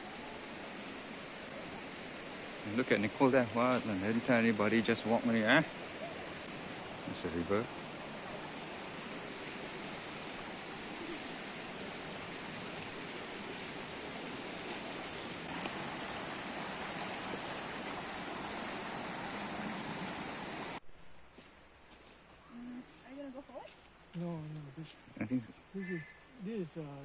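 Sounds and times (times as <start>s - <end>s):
river water rushing: 0.0s - 20.8s
faint insect chirping: 0.0s - 27.0s.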